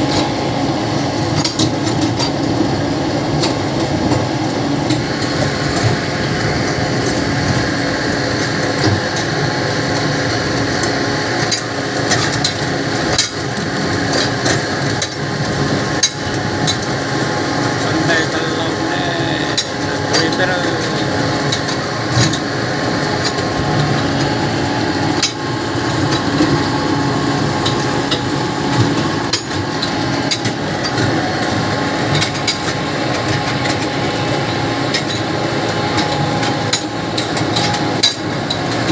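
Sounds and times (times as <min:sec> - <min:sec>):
steady mechanical hum: 0:00.0 - 0:38.9
irregular clicks and knocks: 0:19.4 - 0:24.4.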